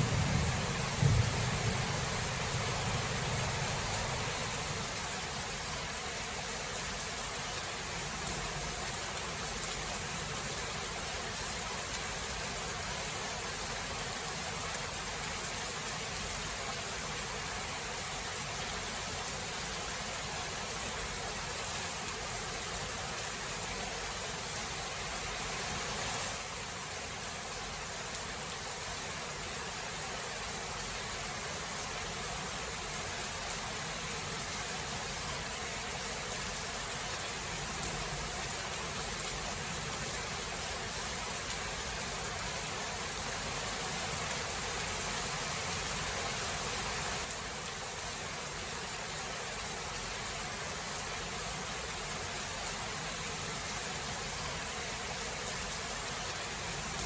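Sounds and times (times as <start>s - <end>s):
low rumble of thunder: 0.0s - 4.8s
heavy rain hissing: 0.0s - 57.0s.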